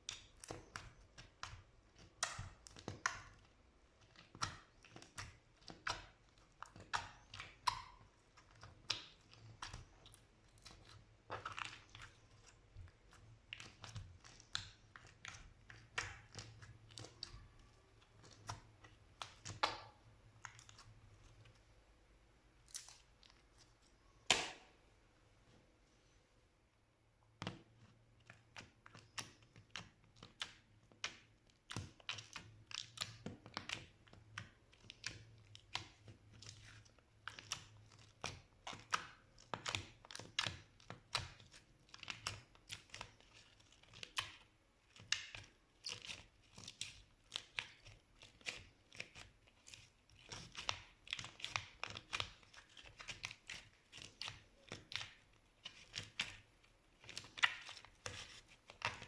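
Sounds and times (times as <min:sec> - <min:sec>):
slime squished by hand: 0:00.0 - 0:21.4.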